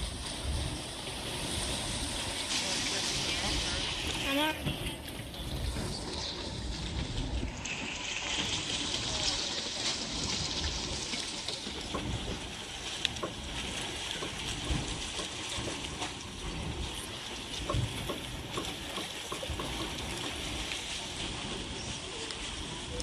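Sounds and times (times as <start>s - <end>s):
water churning and splashing: 0.0s - 23.0s.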